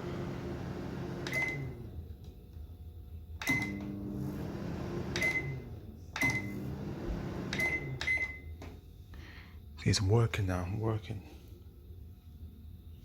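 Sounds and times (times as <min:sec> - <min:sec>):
microwave oven humming: 0:00.0 - 0:09.5
keypad click with beep: 0:03.4 - 0:03.8, 0:06.2 - 0:06.5, 0:07.6 - 0:08.5.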